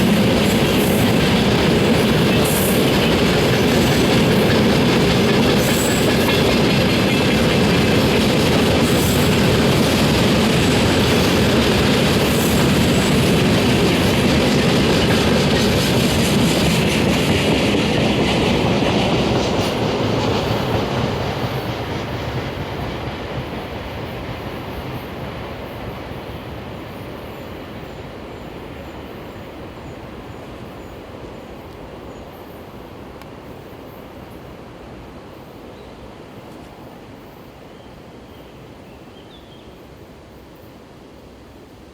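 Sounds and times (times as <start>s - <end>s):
train wheels clattering over rail joints: 0.0s - 23.7s.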